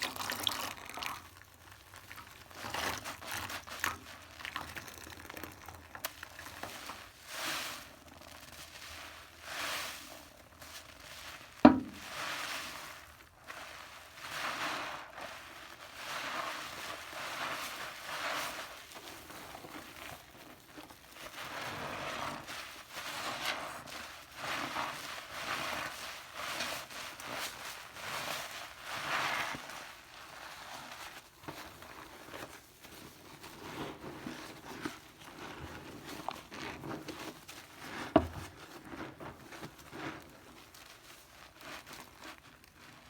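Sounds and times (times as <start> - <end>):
material crackling and rustling: 5.5 - 43.0.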